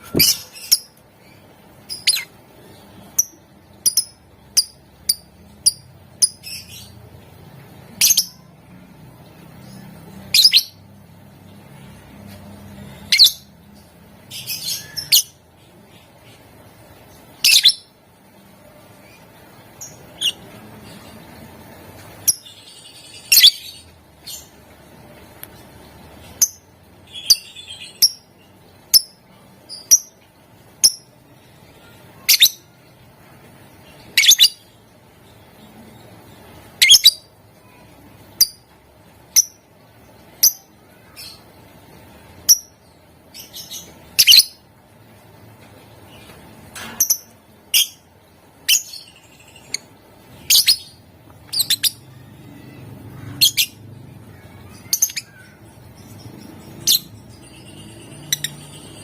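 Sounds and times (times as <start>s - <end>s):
lovebird chirping: 0.0s - 7.0s, 9.6s - 10.9s, 12.8s - 16.2s, 17.1s - 18.0s, 18.7s - 24.6s, 26.3s - 30.2s, 33.9s - 38.7s, 39.3s - 44.7s, 46.1s - 59.0s.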